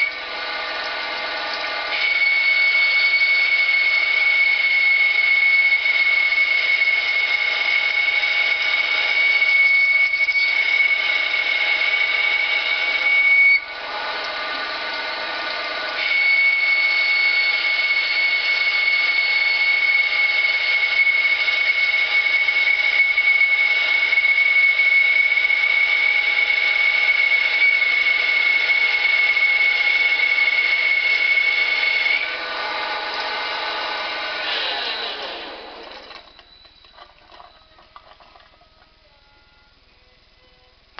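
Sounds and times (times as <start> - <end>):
lathe high-pitched whine: 0.0 - 40.9
low steady machine tones: 35.4 - 40.9.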